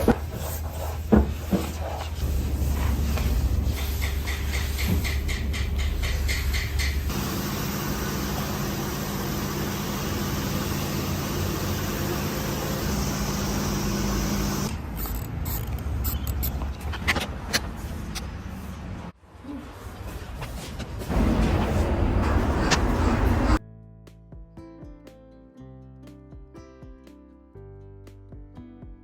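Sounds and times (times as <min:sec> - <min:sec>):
machine hum: 0:02.2 - 0:14.7, 0:21.1 - 0:23.6.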